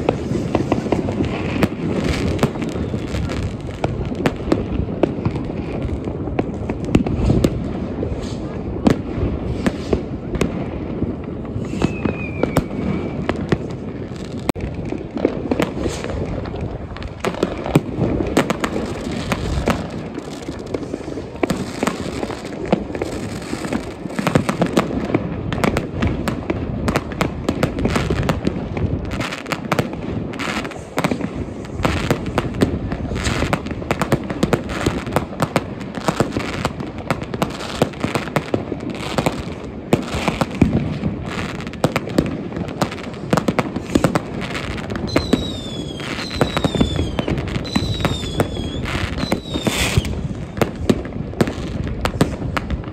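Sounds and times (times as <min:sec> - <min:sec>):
fireworks bangs and crackling: 0:00.0 - 0:52.9
falling firework whistle: 0:11.4 - 0:14.0, 0:43.3 - 0:52.7.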